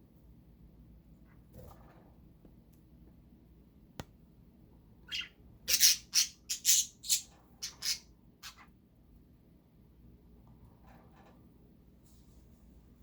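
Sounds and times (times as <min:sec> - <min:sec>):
parrot squawking: 0:05.1 - 0:08.7.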